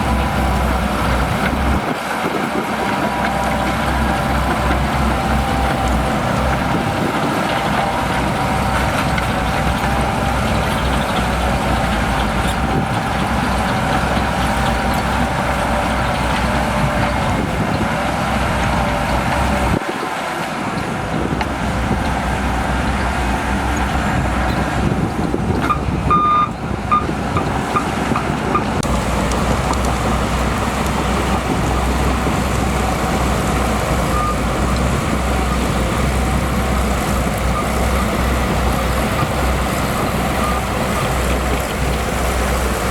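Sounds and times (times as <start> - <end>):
bulldozer diesel engine rumbling: 0.0 - 42.9
reversing alarm beeps: 25.6 - 28.7, 34.1 - 34.8.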